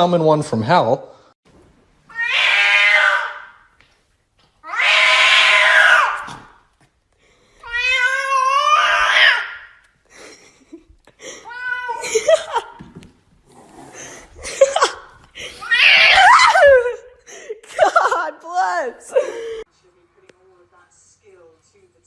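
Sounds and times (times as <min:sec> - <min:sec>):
cat yowling: 0:02.1 - 0:03.6, 0:04.6 - 0:06.4, 0:07.6 - 0:09.8, 0:11.4 - 0:12.3, 0:15.6 - 0:16.8.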